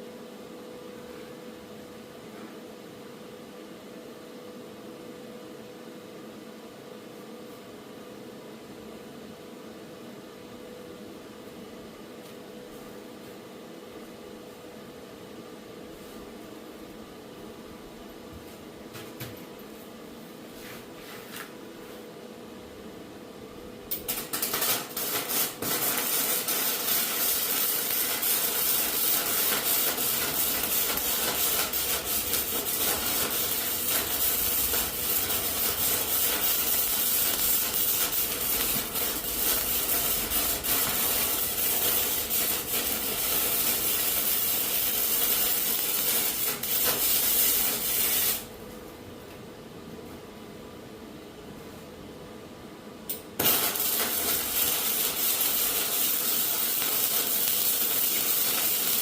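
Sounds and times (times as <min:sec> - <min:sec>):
welding arc crackling: 0:23.9 - 0:48.5, 0:53.4 - 0:59.0.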